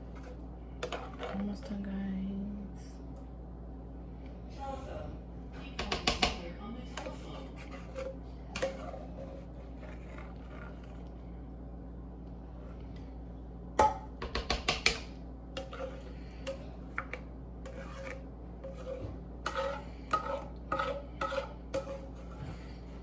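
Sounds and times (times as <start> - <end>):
steady low hum: 0.0 - 23.0
metal spoon scraping a pot: 0.1 - 1.4, 7.0 - 11.1, 15.6 - 23.0.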